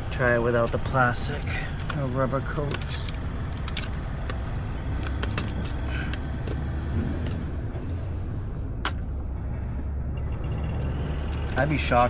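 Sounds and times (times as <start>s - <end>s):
low rumble: 0.0s - 12.0s.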